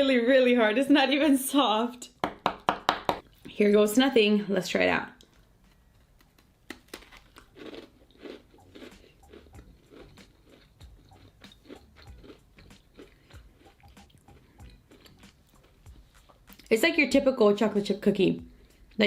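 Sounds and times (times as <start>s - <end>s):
crunchy cookie chewing: 5.2s - 16.7s.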